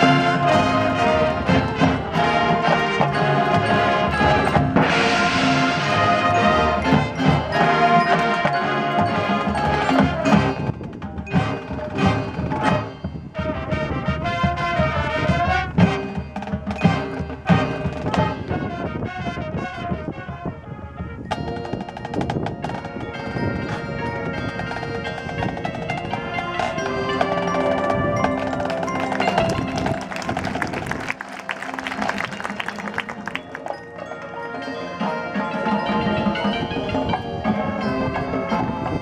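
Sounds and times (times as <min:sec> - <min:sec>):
marching band playing: 0:00.0 - 0:39.0
sharp percussion hits: 0:21.3 - 0:39.0.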